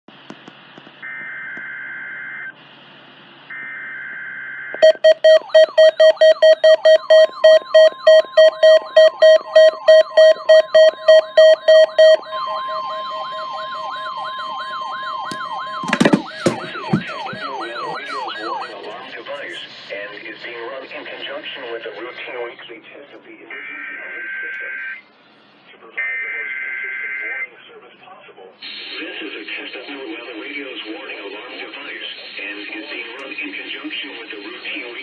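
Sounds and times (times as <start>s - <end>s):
rapid alarm beeping: 4.8s - 18.4s
steady warning alarm tone: 4.8s - 18.4s.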